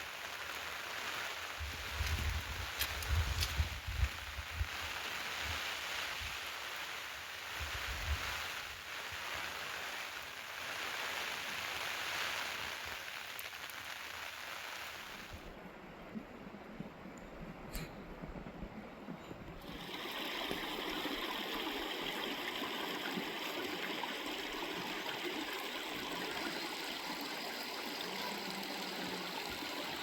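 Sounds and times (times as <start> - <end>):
rain falling: 0.0 - 15.5, 19.6 - 30.0.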